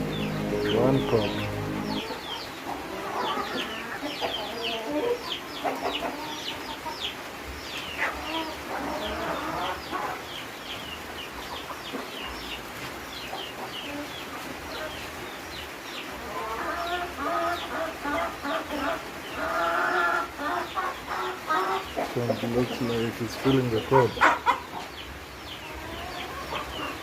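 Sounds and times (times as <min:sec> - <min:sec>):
hen clucking: 0:00.0 - 0:07.1, 0:07.9 - 0:10.4, 0:16.2 - 0:27.0
chicks peeping: 0:00.0 - 0:27.0.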